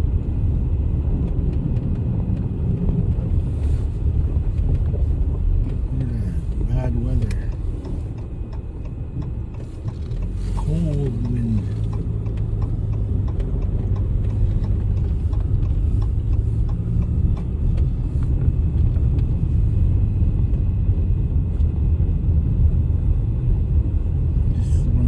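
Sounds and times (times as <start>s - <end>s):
vehicle driving rumble: 0.0s - 25.0s
faint ticks: 6.5s - 19.5s.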